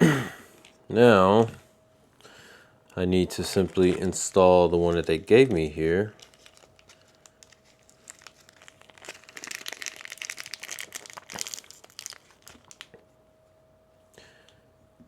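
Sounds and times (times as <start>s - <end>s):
plastic packaging crinkling: 3.2s - 13.1s.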